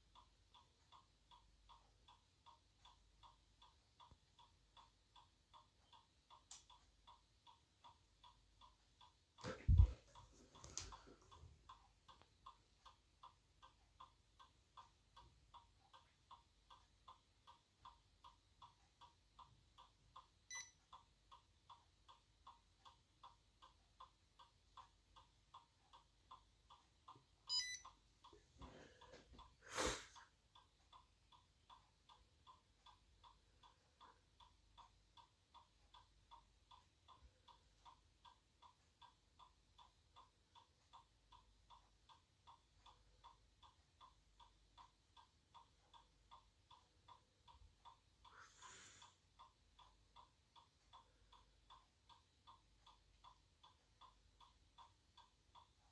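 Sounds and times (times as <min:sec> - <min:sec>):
faint short electronic beeps: 0:20.5 - 0:20.8, 0:27.5 - 0:27.8.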